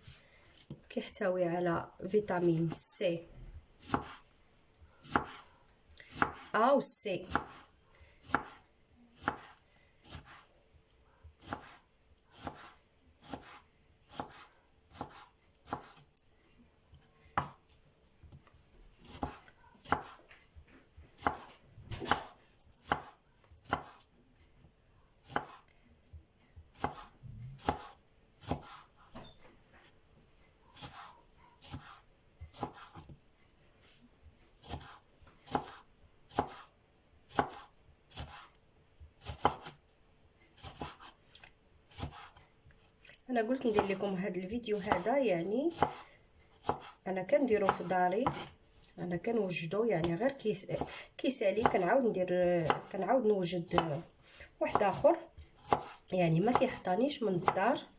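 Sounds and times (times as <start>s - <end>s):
knife slicing lemons: 3.8s - 4.3s, 5.0s - 5.5s, 6.1s - 8.6s, 9.2s - 10.5s, 11.4s - 16.0s, 19.1s - 20.2s, 21.2s - 24.1s, 25.2s - 25.7s, 26.7s - 28.9s, 30.8s - 33.2s, 34.6s - 36.7s, 37.3s - 38.6s, 39.2s - 39.8s, 40.6s - 41.2s, 41.9s - 42.4s, 44.8s - 48.6s, 55.6s - 57.8s.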